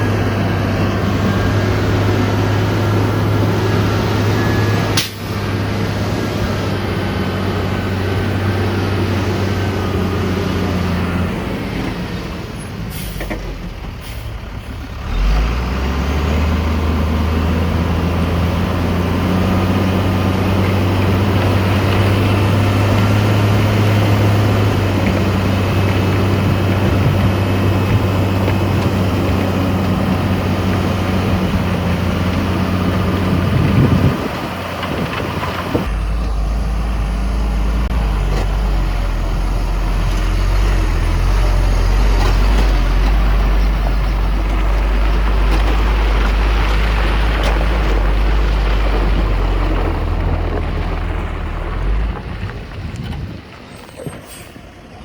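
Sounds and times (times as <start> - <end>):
heavy diesel engines running: 0.0 - 55.0.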